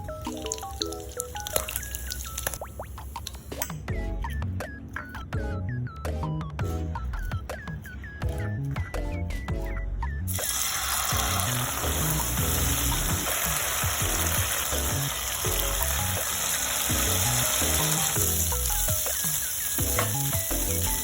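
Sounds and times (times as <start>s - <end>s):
background music: 0.0s - 21.0s
food sizzling in hot oil: 0.2s - 3.0s, 10.3s - 21.0s.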